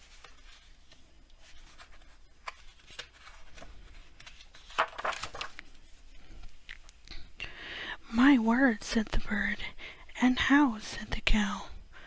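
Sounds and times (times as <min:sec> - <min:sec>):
paper rustling: 0:00.0 - 0:05.9.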